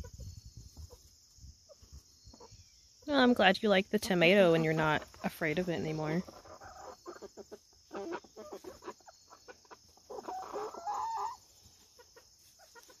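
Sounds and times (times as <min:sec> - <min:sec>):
chickens clucking: 0:00.0 - 0:13.0
wavering chicken call: 0:10.1 - 0:11.4.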